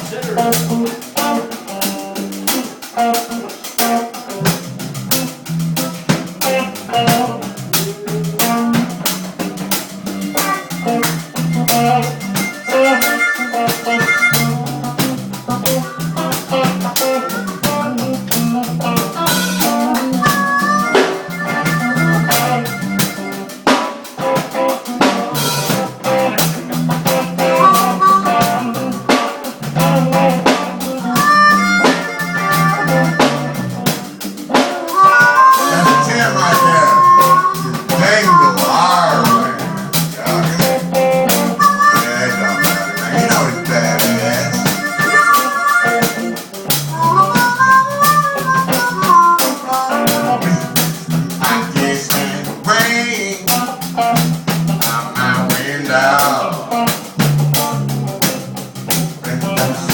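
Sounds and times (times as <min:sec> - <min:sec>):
drum kit beat: 0:00.0 - 0:59.9
guitar: 0:00.0 - 0:59.9
walking bass line: 0:04.2 - 0:59.9.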